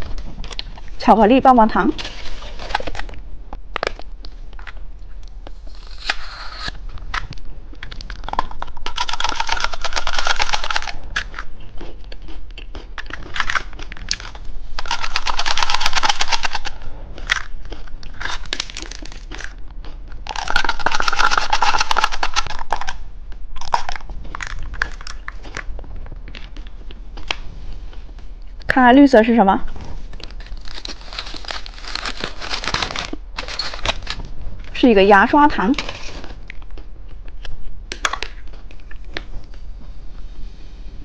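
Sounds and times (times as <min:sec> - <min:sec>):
plastic wrapping crinkling: 0:20.3 - 0:23.0, 0:30.0 - 0:34.4.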